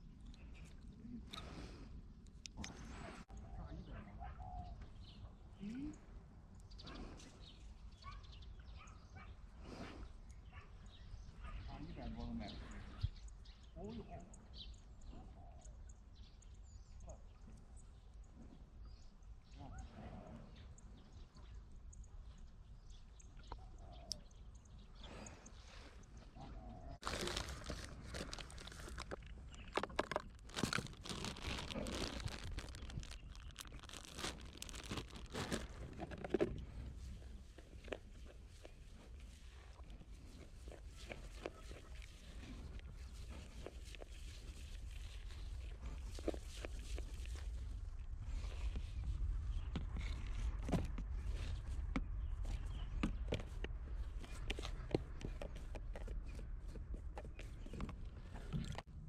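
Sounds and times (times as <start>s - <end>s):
rustling and crunching: 27.0s - 59.0s.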